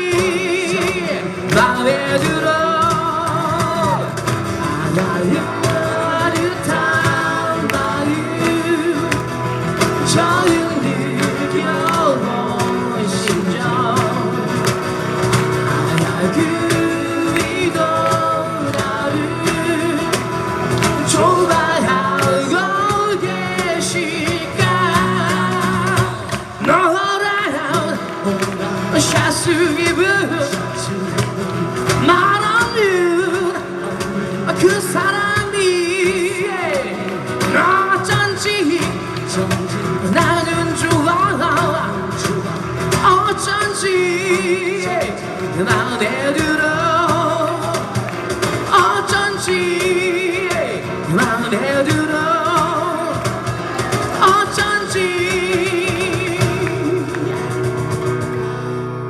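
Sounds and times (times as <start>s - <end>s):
person singing with vibrato: 0.0s - 59.0s.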